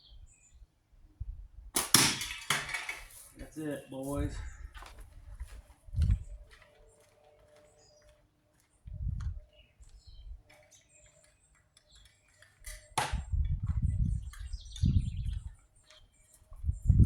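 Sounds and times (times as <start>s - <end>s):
birds chirping faintly: 0.0s - 1.3s, 3.1s - 17.0s
sharp crack: 1.8s - 3.6s.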